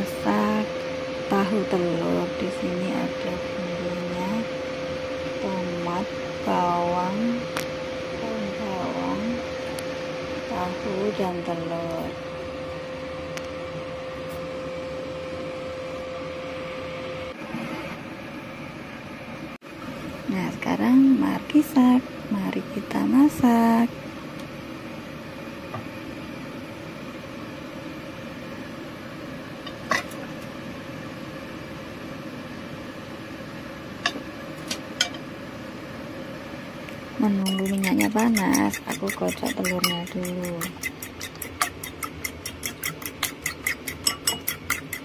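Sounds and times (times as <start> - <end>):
machine hum with constant tone: 0.0 - 45.0
utensils clinking against cookware: 37.4 - 45.0.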